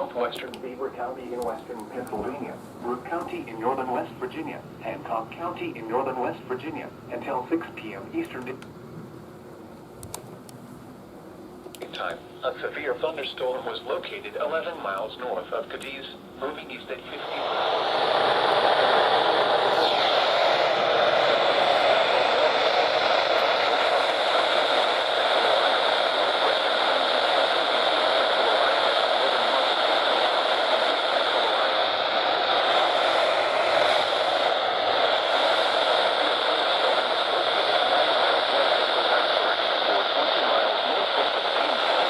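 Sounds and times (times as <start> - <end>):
radio static hiss: 0.0 - 8.6, 11.8 - 42.0.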